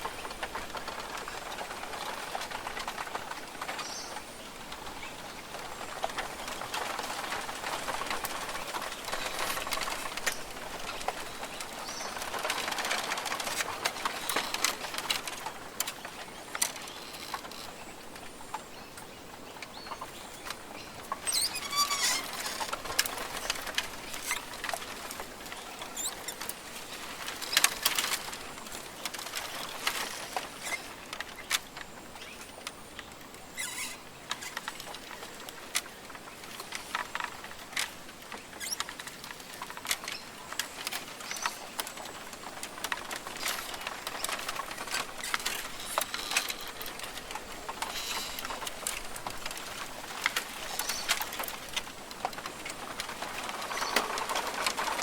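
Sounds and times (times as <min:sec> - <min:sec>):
faint bird calls: 0:33.5 - 0:35.0.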